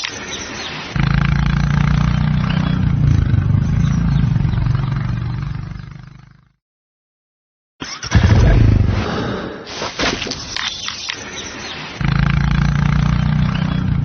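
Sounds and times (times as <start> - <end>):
motorcycle engine idling: 1.0 - 6.6, 12.0 - 14.0.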